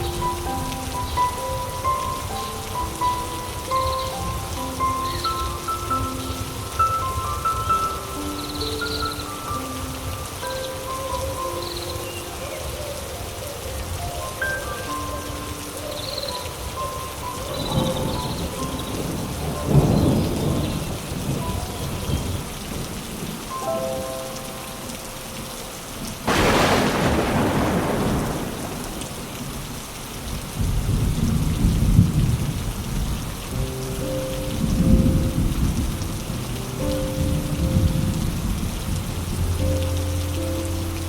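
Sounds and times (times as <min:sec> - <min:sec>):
steady rain falling: 0:00.0 - 0:41.0
low rolling thunder: 0:17.5 - 0:23.4, 0:26.2 - 0:40.2
sharp thunderclap: 0:26.3 - 0:29.7.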